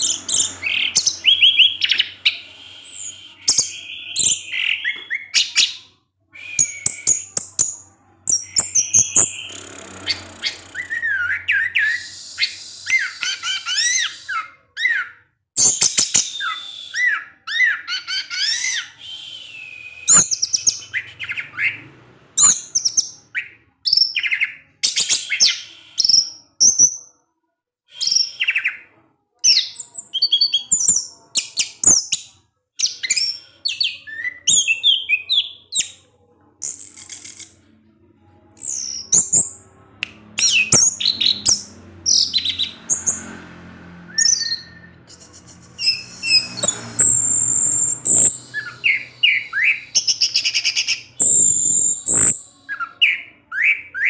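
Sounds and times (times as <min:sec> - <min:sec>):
thrush singing whistled trills: 0:00.0 - 0:21.8, 0:44.0 - 0:54.0.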